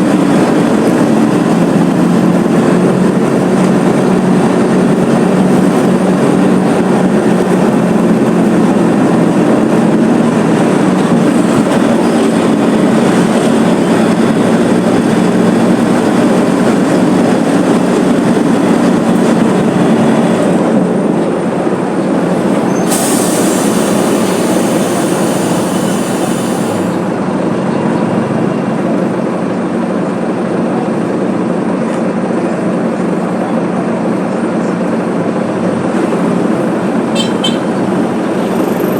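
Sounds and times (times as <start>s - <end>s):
bus diesel engine droning: 0.0s - 38.9s
bus rattling: 0.0s - 38.9s
hiss: 22.8s - 27.0s.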